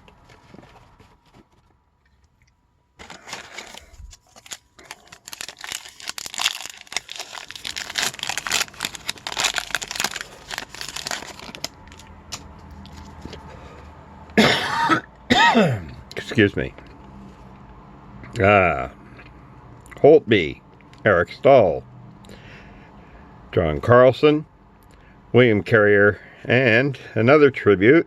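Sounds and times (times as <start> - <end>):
wrapper tearing and crinkling: 3.0 - 13.2.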